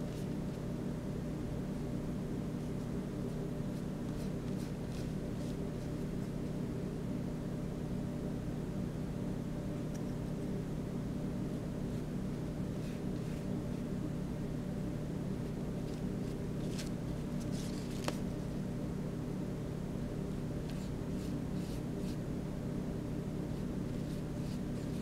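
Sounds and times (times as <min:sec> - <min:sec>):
low background hum: 0:00.0 - 0:25.0
paintbrush swishing on paper: 0:02.7 - 0:06.4, 0:20.7 - 0:22.2, 0:23.5 - 0:25.0.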